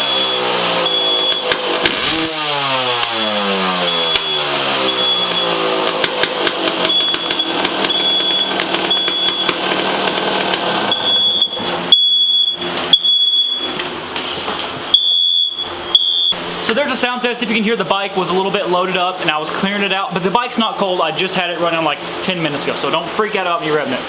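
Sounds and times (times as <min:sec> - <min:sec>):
smoke alarm beeping: 0:00.0 - 0:01.8, 0:03.0 - 0:09.7, 0:10.9 - 0:13.8, 0:14.9 - 0:16.4
dirt bike engine revving and popping: 0:00.0 - 0:12.0.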